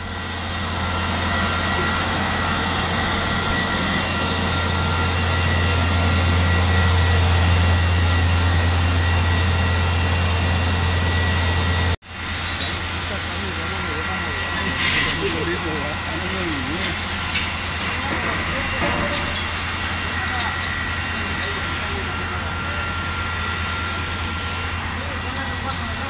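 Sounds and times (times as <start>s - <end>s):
large engine idling: 0.0s - 26.0s
thin steady whine: 0.0s - 26.0s.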